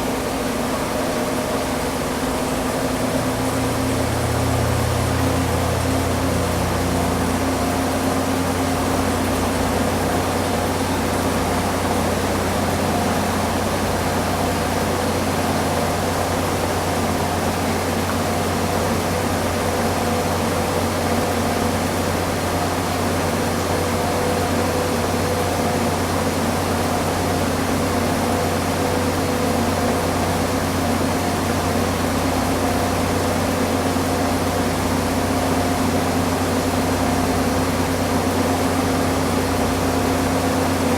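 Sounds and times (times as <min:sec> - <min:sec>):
washing machine spin cycle: 0:00.0 - 0:40.9.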